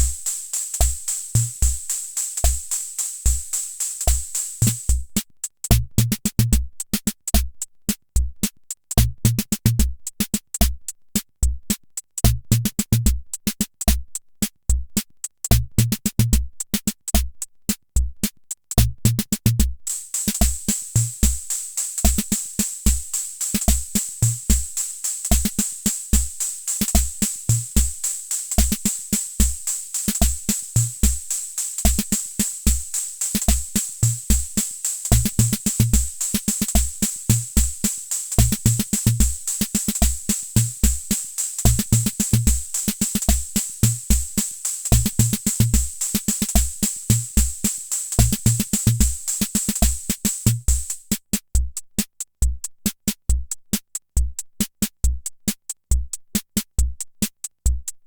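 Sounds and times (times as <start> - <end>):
hi-hat and cymbal ticks: 0.0 - 58.0
bass drum thumps: 15.5 - 16.5, 18.8 - 46.0, 46.6 - 51.0.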